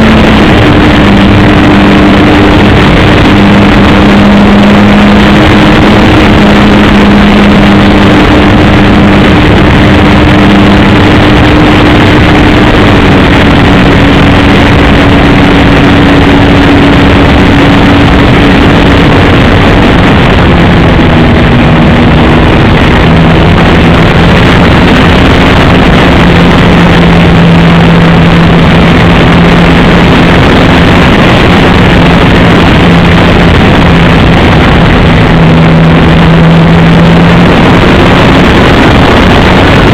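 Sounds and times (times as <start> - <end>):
model plane engine buzzing: 0.0 - 39.9.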